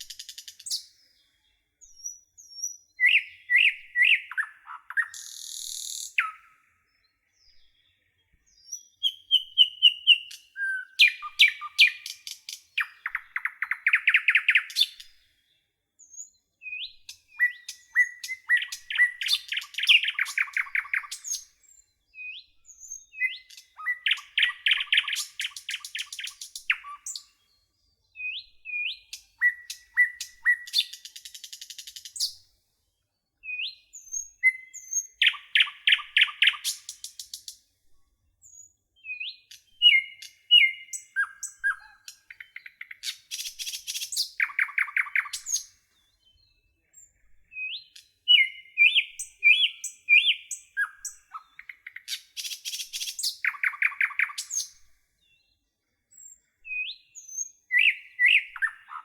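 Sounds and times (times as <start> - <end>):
songbird song with trill: 0.0 - 59.0
short upward bird chirps: 38.5 - 54.8, 56.1 - 59.0.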